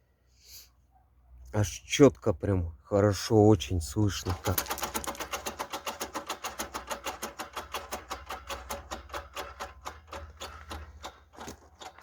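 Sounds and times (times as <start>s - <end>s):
wheel brake scraping tick: 4.6s - 12.0s.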